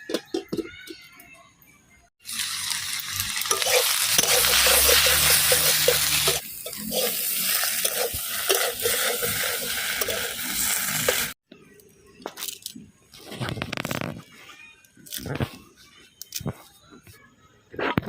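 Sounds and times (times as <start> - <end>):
food sizzling in oil in a pan: 2.2 - 11.4
stirring strokes: 3.4 - 11.4.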